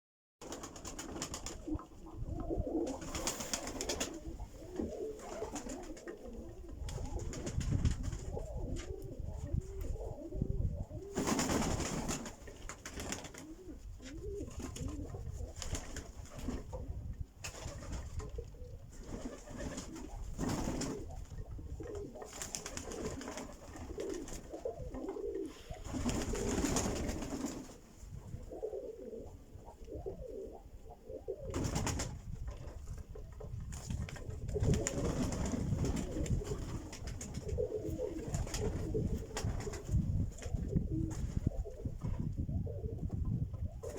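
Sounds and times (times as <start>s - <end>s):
birds cooing: 4.1s - 7.2s.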